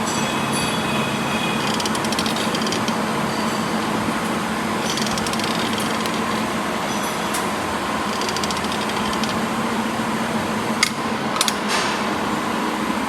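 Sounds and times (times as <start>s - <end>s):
metal lathe humming: 0.8s - 10.3s
fast ticking: 1.4s - 6.8s, 8.0s - 9.7s
sharp clicks or knocks: 1.6s - 3.0s, 4.8s - 6.5s, 8.1s - 9.4s.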